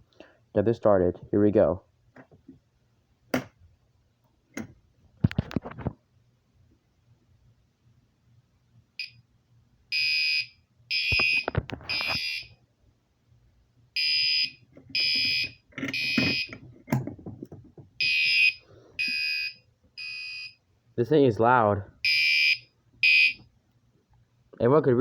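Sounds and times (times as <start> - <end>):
fire alarm horn blasts: 9.9 - 12.5, 14.0 - 16.5, 18.0 - 20.5, 22.0 - 23.4
light knocks and rattles: 16.5 - 18.0.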